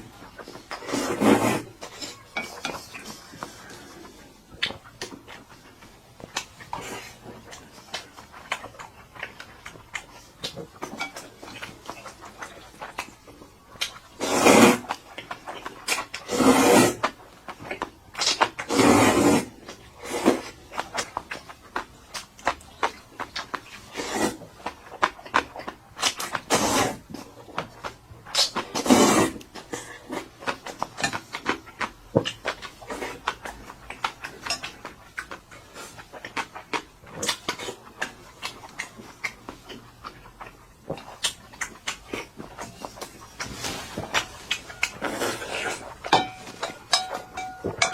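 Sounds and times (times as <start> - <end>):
chewing clicks and mouth noise: 1.8 - 14.2, 14.8 - 16.3, 20.5 - 26.5, 29.4 - 47.0.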